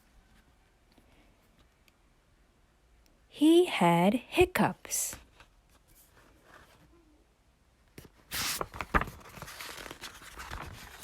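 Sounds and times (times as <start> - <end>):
book page turning: 8.0 - 11.0
paper rustling from handling: 8.0 - 11.0.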